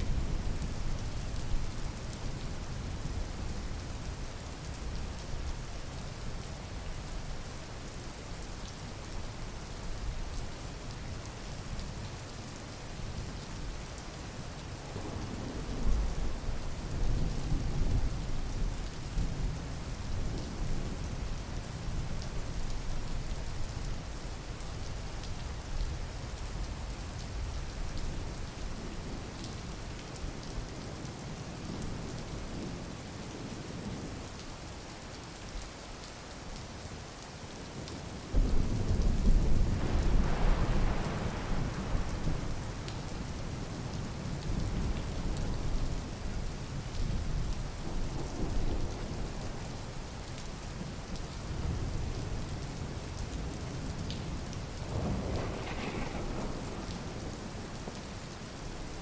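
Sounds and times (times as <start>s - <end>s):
steady rain falling: 0.0s - 59.0s
thunder rumbling: 38.3s - 43.9s, 54.8s - 58.2s.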